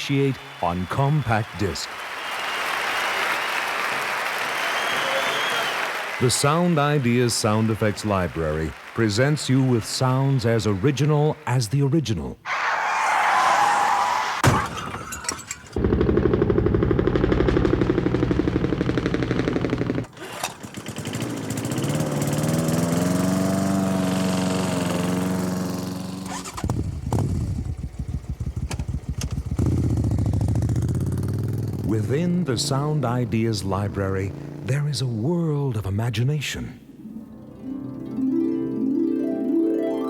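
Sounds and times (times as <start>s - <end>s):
engine rising in pitch: 15.8s - 20.1s, 20.7s - 35.3s
rattling engine: 15.8s - 34.8s
engine running with fast pulse: 15.8s - 35.2s.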